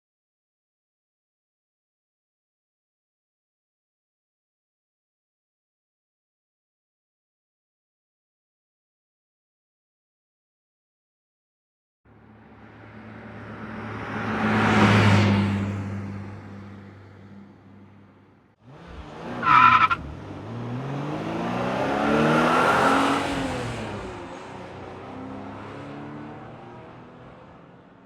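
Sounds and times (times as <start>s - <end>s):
car driving past: 12.1s - 28.0s
car engine revving: 18.6s - 27.6s.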